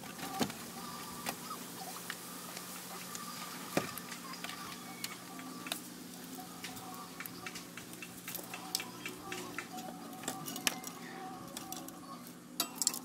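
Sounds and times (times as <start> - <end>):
steady low hum: 0.0 - 13.0
small clicks and ticks: 2.0 - 12.0.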